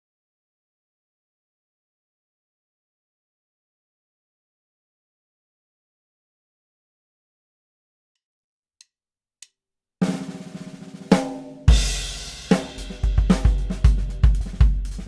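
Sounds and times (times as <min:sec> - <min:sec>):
drum beat of bass and snare: 0:10.0 - 0:15.0
drum roll: 0:10.0 - 0:15.0
tom drum hit: 0:11.1 - 0:15.0
cymbal wash: 0:11.7 - 0:14.2.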